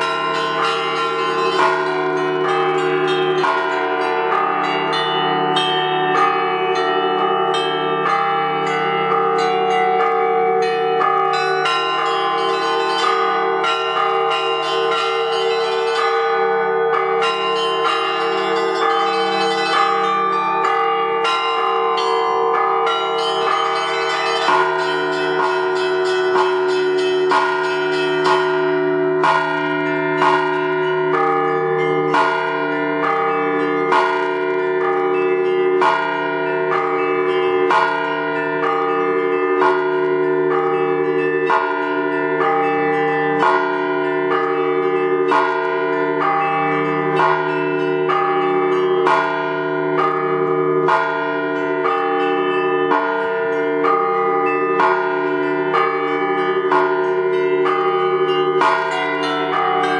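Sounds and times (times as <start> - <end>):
deep bell striking: 0.0 - 43.9
hum of larger bells: 0.0 - 59.9
small bells chiming rapidly: 0.0 - 59.9.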